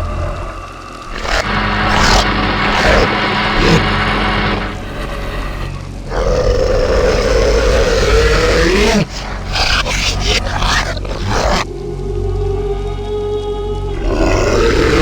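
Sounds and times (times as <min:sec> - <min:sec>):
steady low tone: 0:00.0 - 0:08.2, 0:10.8 - 0:14.4
monster growling and roaring: 0:00.0 - 0:11.7, 0:13.9 - 0:15.0.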